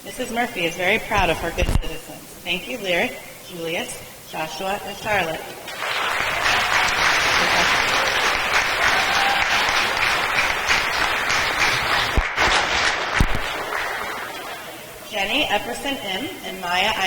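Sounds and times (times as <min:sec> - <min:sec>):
children clapping: 0:05.5 - 0:14.9.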